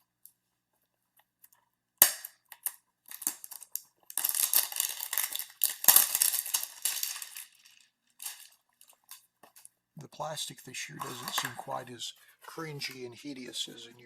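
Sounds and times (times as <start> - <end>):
box snapping open: 2.0 - 7.3
plastic wrapping tearing and crinkling: 2.0 - 9.7.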